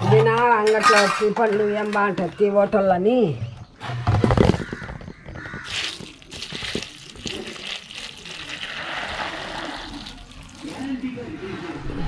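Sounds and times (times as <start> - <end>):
water sloshing and splashing: 5.5 - 11.1.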